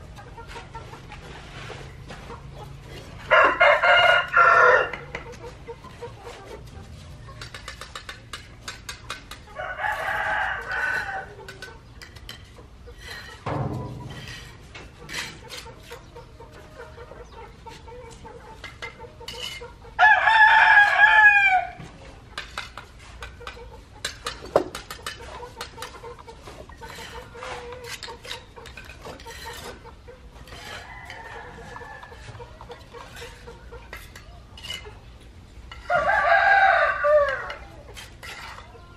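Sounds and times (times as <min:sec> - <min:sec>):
rooster crowing: 0:03.3 - 0:05.0, 0:09.6 - 0:11.3, 0:20.0 - 0:21.8, 0:35.9 - 0:37.7
low thump: 0:13.5 - 0:14.4.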